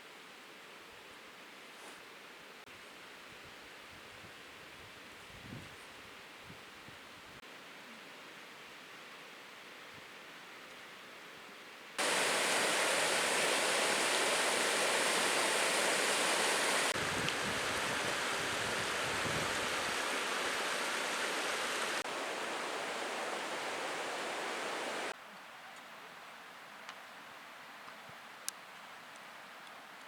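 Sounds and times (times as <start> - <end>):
rushing water: 12.0 - 25.2.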